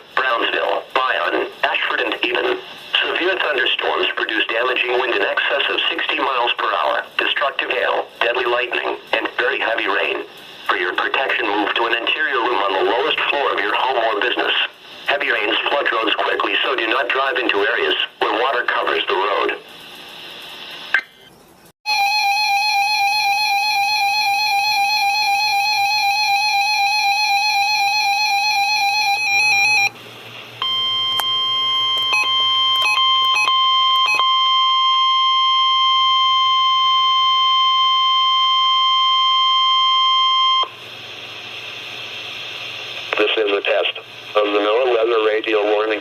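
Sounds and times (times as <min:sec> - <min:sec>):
steady alarm tone: 0:21.9 - 0:30.0, 0:30.6 - 0:41.1.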